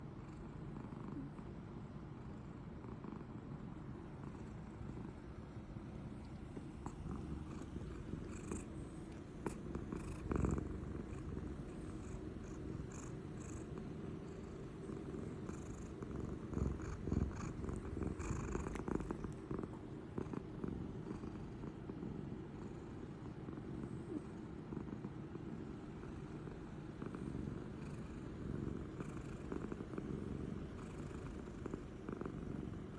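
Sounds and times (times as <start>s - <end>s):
cat snoring: 6.7s - 32.9s.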